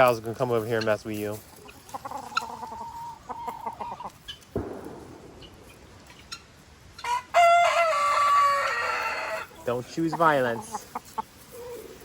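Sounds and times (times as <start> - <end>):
rooster crowing: 7.0 - 9.5.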